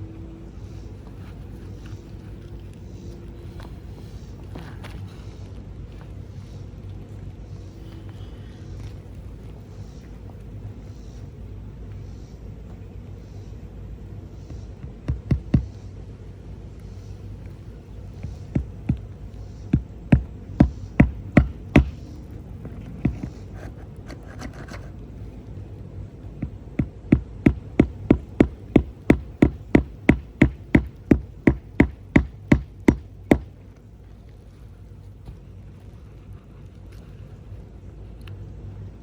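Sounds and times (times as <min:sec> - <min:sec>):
hammer nailing roof shingle: 0:14.5 - 0:15.9, 0:18.1 - 0:24.8, 0:26.3 - 0:33.6.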